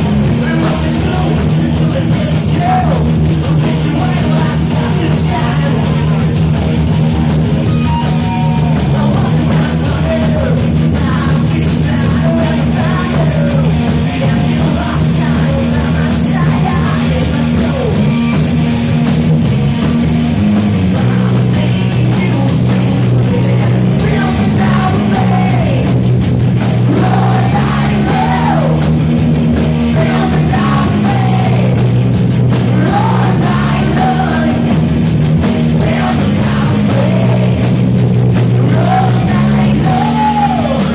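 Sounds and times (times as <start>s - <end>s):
bass line: 0.0s - 40.9s
rock band playing: 0.0s - 40.9s
person singing: 8.1s - 18.0s, 26.9s - 28.8s, 29.9s - 31.8s, 32.7s - 34.7s, 38.7s - 40.9s.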